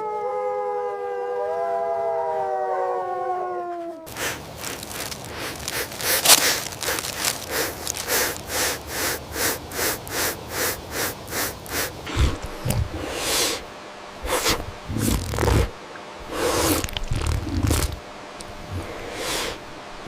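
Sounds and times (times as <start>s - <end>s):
deep animal rumble: 4.0s - 20.0s
animal sniffing rapidly: 4.1s - 19.7s
animal snorting and huffing: 4.1s - 20.0s.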